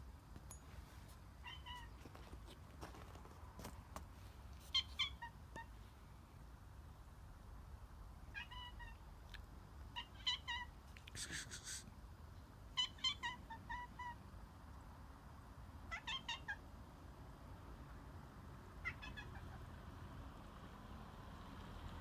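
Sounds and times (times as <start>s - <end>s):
cat meowing: 1.4s - 2.0s, 8.3s - 9.0s, 12.8s - 14.2s, 15.9s - 16.6s, 18.8s - 19.6s
brief hissing: 11.2s - 11.9s.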